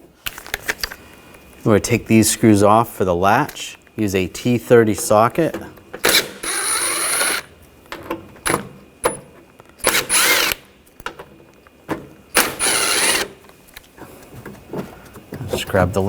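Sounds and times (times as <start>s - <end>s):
power tool unscrewing screws: 6.0s - 7.5s, 9.8s - 10.6s, 12.4s - 13.4s.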